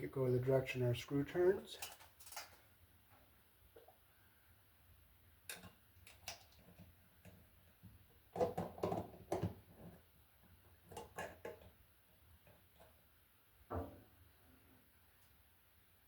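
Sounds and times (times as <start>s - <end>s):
stiff wire being handled: 1.8s - 2.7s.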